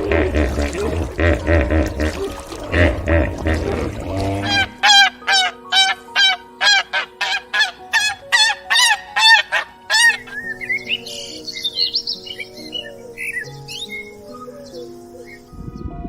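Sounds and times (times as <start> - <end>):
waterfowl honking: 0.1 - 10.5.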